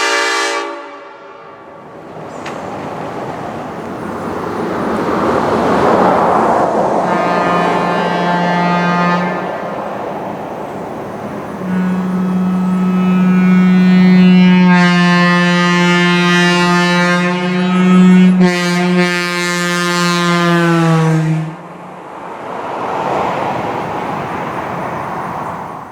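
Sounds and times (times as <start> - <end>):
low train horn tone: 0.0 - 2.6, 6.9 - 10.2, 11.0 - 21.8
steady rushing noise: 1.7 - 12.4
multi-chime train horn chord: 7.1 - 9.5, 11.6 - 21.4.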